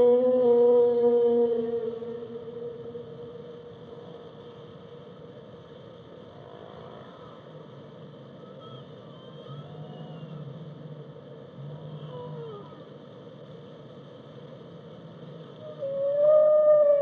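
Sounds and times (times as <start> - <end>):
loud long whale call: 0.0 - 4.4, 11.6 - 12.9, 15.6 - 17.0
faint high whale whistles: 8.4 - 10.6, 15.6 - 17.0.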